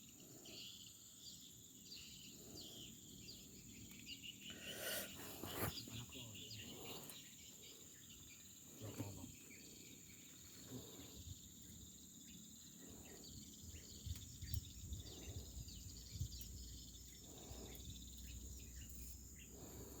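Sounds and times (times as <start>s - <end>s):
bird chirps: 0.0s - 20.0s
high insect drone: 0.0s - 20.0s.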